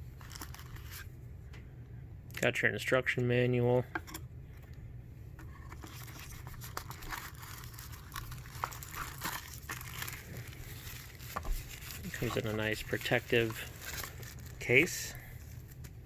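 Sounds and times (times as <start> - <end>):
packaging crinkling and rustling: 0.2 - 1.1, 5.4 - 16.0.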